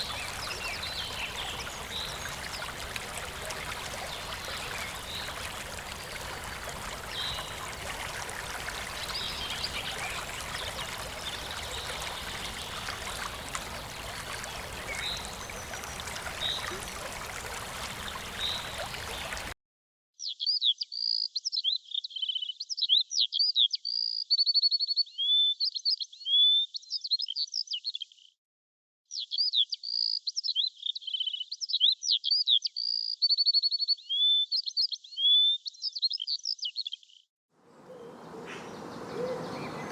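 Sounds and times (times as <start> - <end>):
songbird singing: 0.0 - 19.5, 37.6 - 39.9
stream water running: 0.0 - 19.6, 37.6 - 39.9
bird chirps: 37.7 - 39.9.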